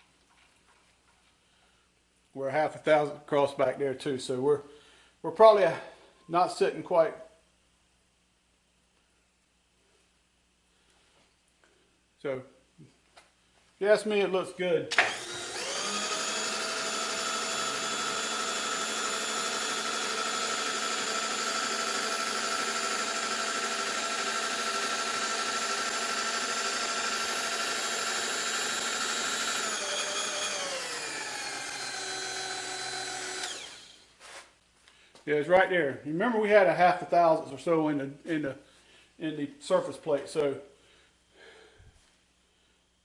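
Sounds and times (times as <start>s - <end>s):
electric tool whining: 14.9s - 34.1s.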